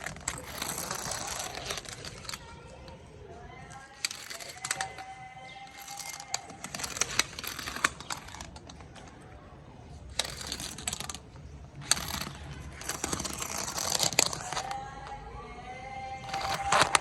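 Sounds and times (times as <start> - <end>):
toy ball clattering on hard surface: 0.0 - 9.3, 10.0 - 15.2, 16.2 - 17.0.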